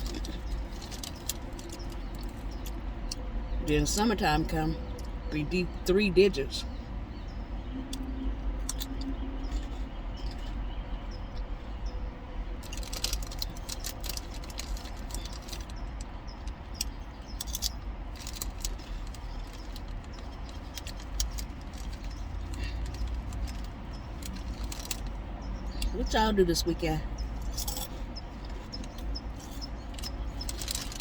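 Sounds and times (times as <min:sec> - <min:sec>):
eating crisp sandwich: 0:00.0 - 0:05.3, 0:12.6 - 0:25.9, 0:27.1 - 0:31.0
low rumble inside a car: 0:00.0 - 0:31.0.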